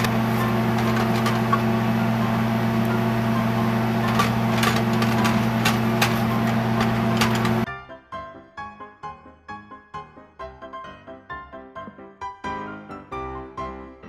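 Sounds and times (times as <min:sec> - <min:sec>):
electrical appliance hum: 0:00.0 - 0:07.7.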